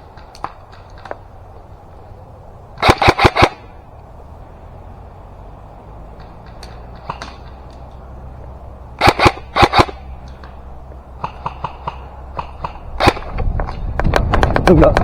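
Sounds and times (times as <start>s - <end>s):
airsoft gun shots: 2.8s - 3.7s, 6.2s - 7.6s, 9.0s - 10.6s, 11.2s - 14.5s.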